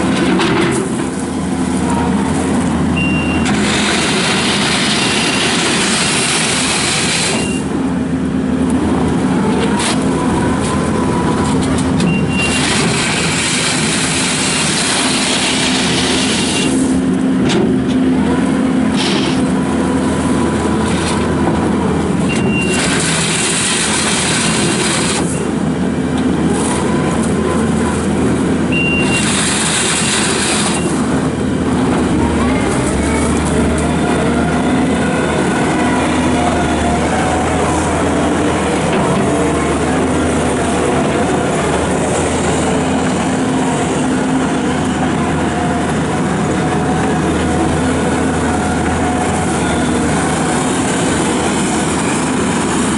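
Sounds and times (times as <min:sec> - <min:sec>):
skid steer diesel engine: 0:00.0 - 0:52.9
short high beep: 0:03.0 - 0:03.5, 0:28.7 - 0:29.2
hiss and clatter: 0:29.1 - 0:31.0.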